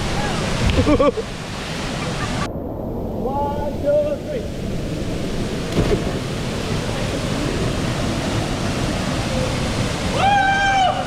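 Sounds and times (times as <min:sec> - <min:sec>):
waterfall roaring: 0:00.0 - 0:02.5, 0:05.2 - 0:11.0.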